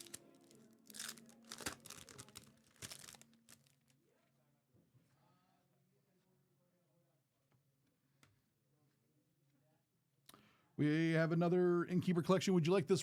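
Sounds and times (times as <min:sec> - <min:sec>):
foil wrappers crinkling: 0:00.0 - 0:03.9.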